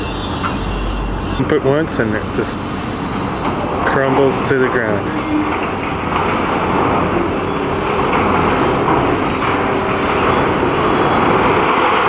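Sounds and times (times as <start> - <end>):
heavy machinery noise: 0.0 - 12.0.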